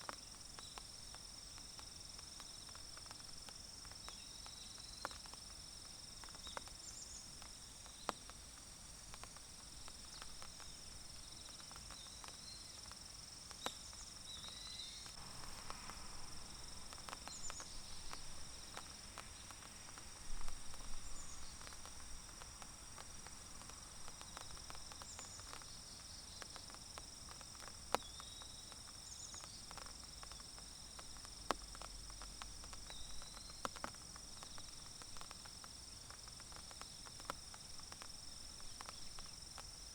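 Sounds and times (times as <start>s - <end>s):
raindrops dripping: 0.0s - 39.9s
high-pitched insect trill: 9.0s - 39.9s.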